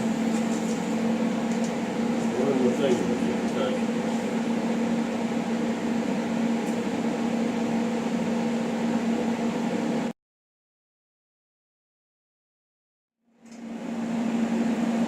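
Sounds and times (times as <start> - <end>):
electrical hum with fan noise: 0.0 - 10.2, 13.3 - 15.0.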